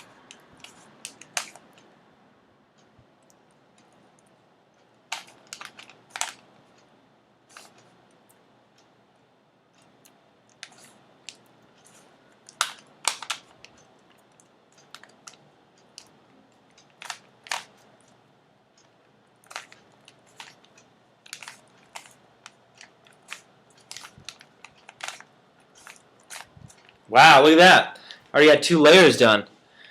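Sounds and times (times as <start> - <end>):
plastic puzzle cube clicking: 5.1 - 6.4, 12.5 - 13.8, 19.5 - 27.0.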